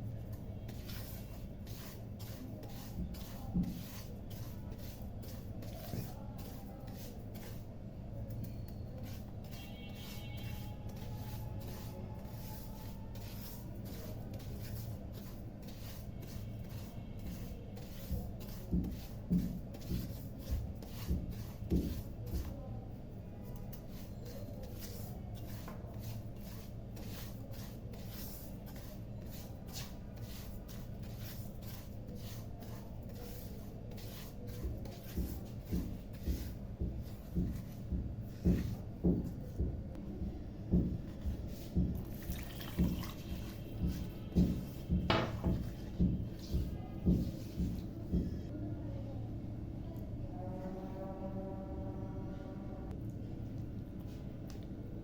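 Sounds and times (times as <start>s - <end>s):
spoon stirring in a pot: 0.2s - 39.7s, 40.8s - 48.4s
steady low hum: 45.6s - 55.0s.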